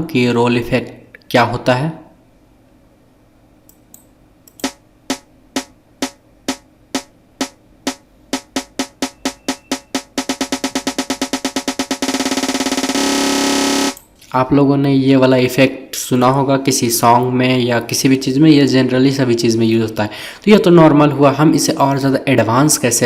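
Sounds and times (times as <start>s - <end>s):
snare drum roll: 4.6s - 14.0s.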